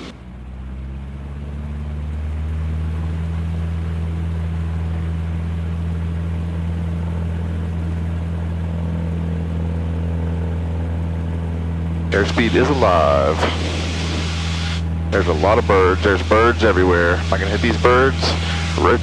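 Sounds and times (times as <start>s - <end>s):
airplane engine droning: 0.0s - 19.0s.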